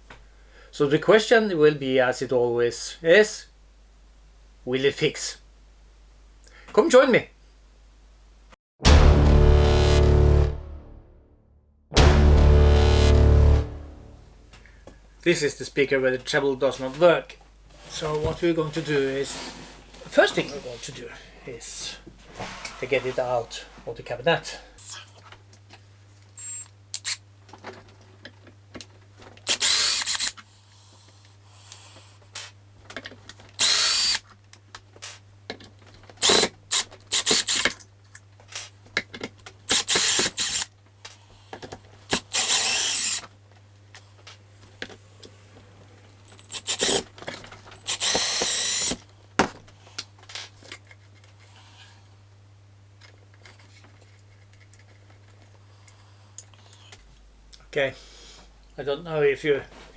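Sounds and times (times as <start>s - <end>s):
cordless screwdriver whirring: 26.4s - 27.2s, 29.4s - 30.4s, 33.6s - 34.2s, 36.2s - 37.8s, 39.7s - 40.7s, 42.1s - 43.3s, 46.3s - 47.1s, 47.8s - 49.0s.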